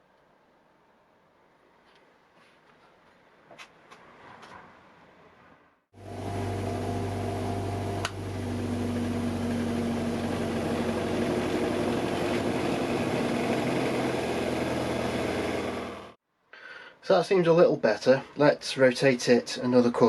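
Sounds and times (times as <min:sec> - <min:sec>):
bench grinder running: 0:06.0 - 0:16.2.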